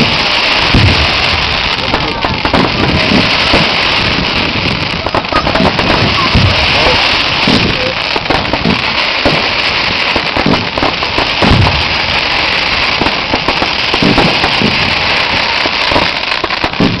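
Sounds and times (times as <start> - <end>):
deep firework thuds: 0.0 - 17.0
fireworks bangs and crackles: 0.0 - 17.0.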